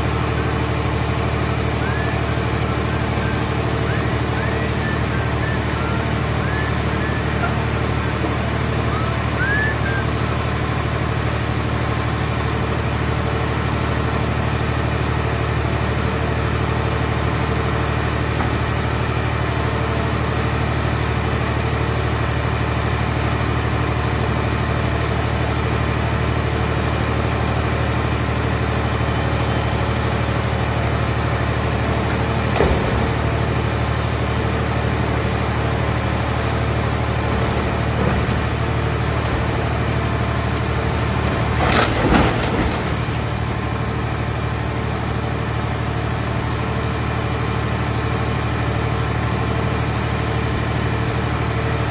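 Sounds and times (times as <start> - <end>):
baler engine running: 0.0 - 51.9
short clunk: 32.1 - 33.6, 41.2 - 43.4.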